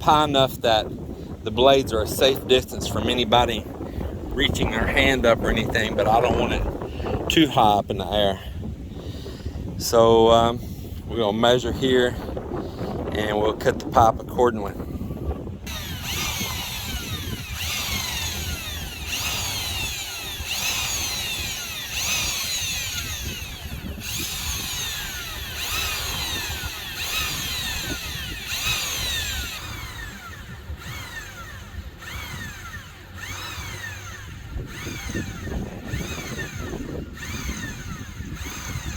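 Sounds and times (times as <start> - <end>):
hacksaw cutting metal tube: 15.7 - 30.1.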